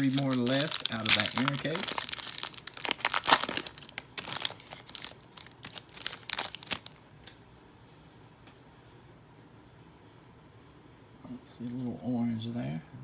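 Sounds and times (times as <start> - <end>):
plastic wrapping crinkling and tearing: 0.0 - 7.0.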